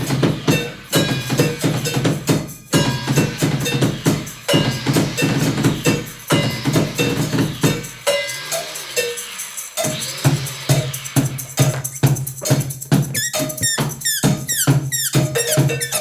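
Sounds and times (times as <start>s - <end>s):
tambourine-like strikes: 0.0s - 16.0s
falling squeaky glides: 13.0s - 16.0s.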